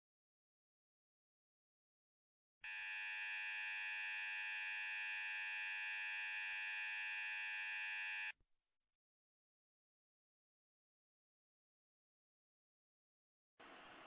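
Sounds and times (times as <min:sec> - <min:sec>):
harsh electronic buzzer: 0:02.6 - 0:08.4.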